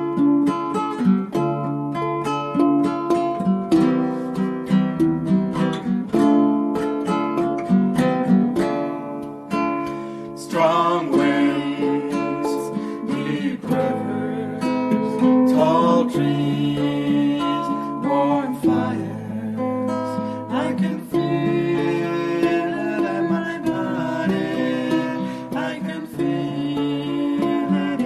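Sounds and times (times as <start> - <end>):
acoustic guitar strumming: 0.0 - 28.0
person singing: 8.6 - 28.0.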